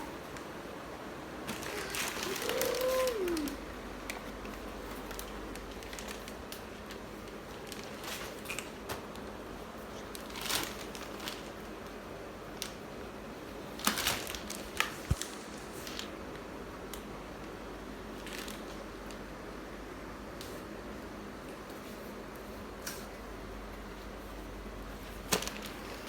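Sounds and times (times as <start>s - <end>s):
steady background hiss: 0.0s - 26.0s
packaging clicks and rustles: 1.5s - 9.4s, 10.0s - 11.8s, 13.8s - 16.1s, 25.2s - 26.0s.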